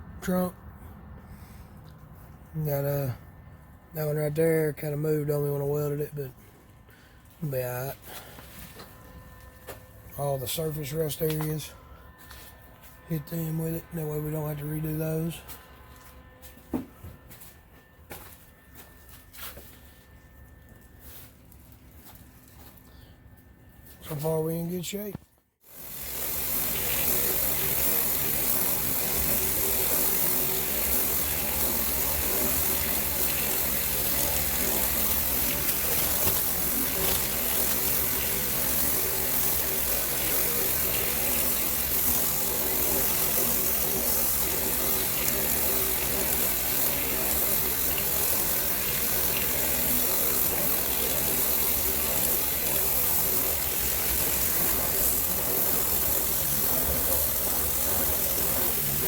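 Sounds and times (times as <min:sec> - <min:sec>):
steady hissing: 0:25.7 - 0:59.0.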